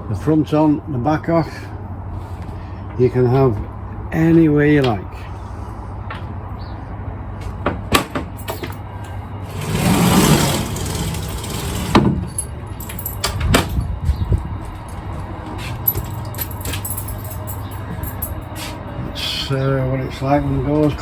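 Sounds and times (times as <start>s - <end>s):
steady low rumble: 12.2s - 21.0s.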